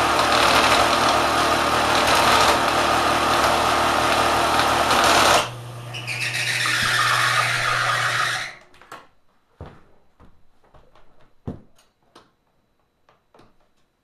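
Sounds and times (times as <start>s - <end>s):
sewing machine whirring: 0.0s - 8.6s.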